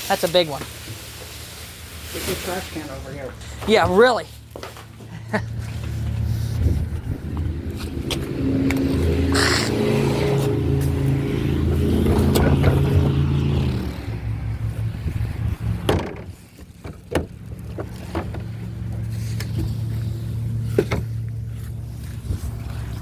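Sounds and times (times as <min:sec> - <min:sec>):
low engine-like hum: 0:04.3 - 0:23.0
sharp knocks and clatters: 0:15.8 - 0:18.6.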